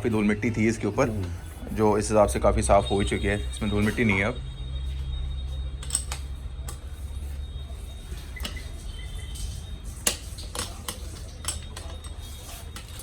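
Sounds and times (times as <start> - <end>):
metal tool clicks and knocks: 10.0 - 12.2.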